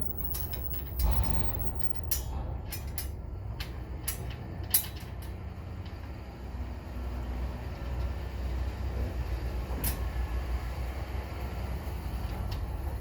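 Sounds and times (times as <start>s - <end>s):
steady low rumble: 0.0s - 4.1s
metal parts clicking and knocking: 0.0s - 6.0s.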